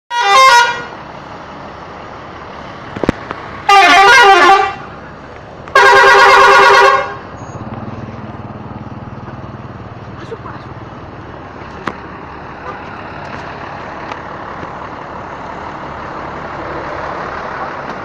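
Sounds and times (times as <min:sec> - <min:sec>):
multi-tone bus horn melody: 0:00.1 - 0:01.0, 0:03.6 - 0:05.0, 0:05.7 - 0:07.4
low engine hum: 0:00.2 - 0:18.0.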